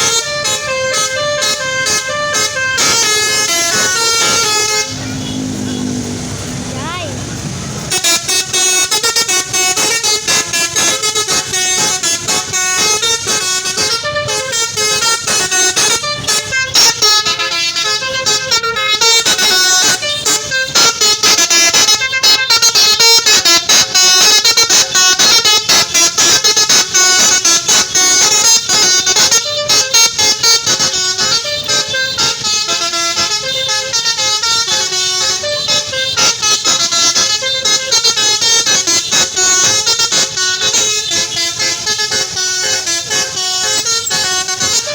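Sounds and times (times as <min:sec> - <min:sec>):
multi-tone bus air horn melody: 0:00.0 - 0:44.9.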